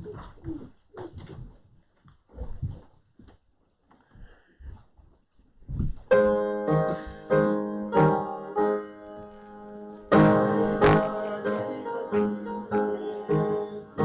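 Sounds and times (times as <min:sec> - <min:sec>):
piano chords: 0:06.1 - 0:14.0.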